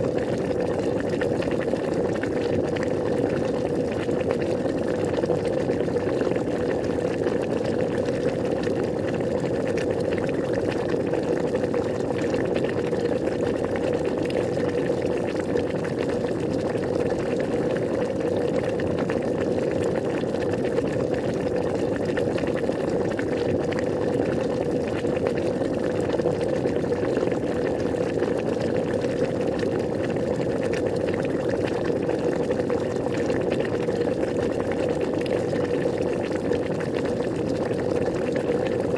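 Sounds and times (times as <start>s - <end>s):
water boiling and bubbling: 0.0s - 38.9s.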